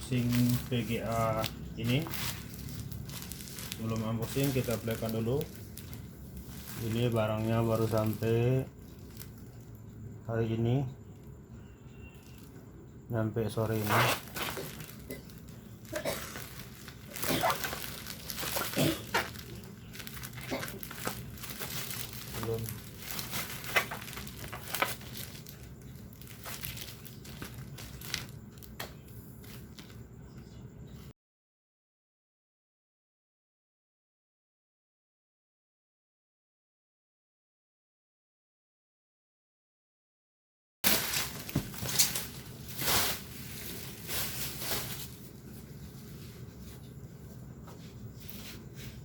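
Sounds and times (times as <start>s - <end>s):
packaging crinkling: 0.0s - 9.8s, 13.5s - 30.0s, 40.8s - 46.5s
low background hum: 0.0s - 31.1s, 40.9s - 49.0s.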